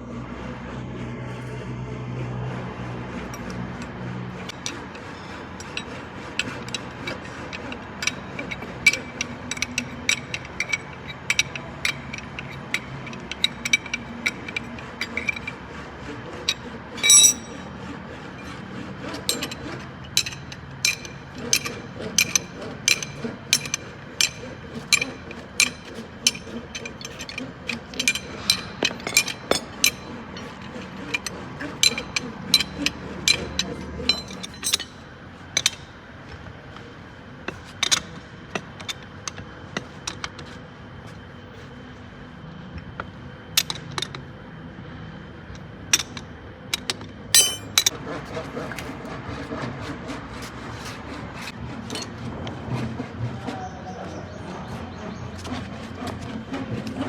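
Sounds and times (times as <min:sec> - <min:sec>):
hand tools clinking on metal: 0:04.4 - 0:15.5, 0:16.5 - 0:17.6, 0:19.2 - 0:19.6, 0:20.2 - 0:35.0, 0:47.4 - 0:47.9
ringing metal strike: 0:17.1 - 0:17.6, 0:47.4 - 0:47.9.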